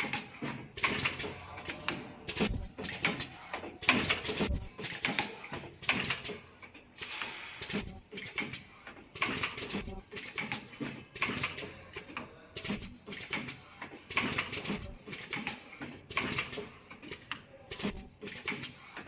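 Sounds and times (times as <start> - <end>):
spot welding machine clicks and hiss: 7.0 - 19.0.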